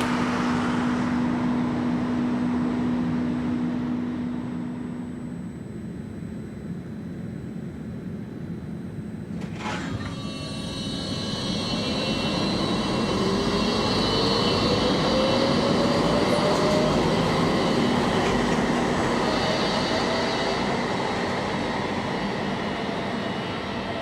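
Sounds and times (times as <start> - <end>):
tram motor whine: 8.9 - 24.0.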